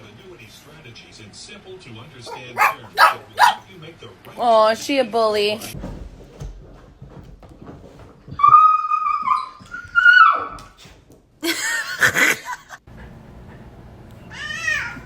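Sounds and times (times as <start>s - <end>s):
pet animal crying out: 2.3s - 3.6s, 8.4s - 10.6s, 14.3s - 15.0s.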